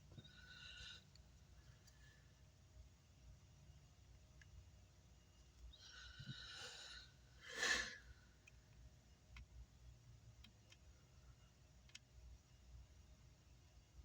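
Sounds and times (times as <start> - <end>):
person exhaling: 6.2 - 8.0.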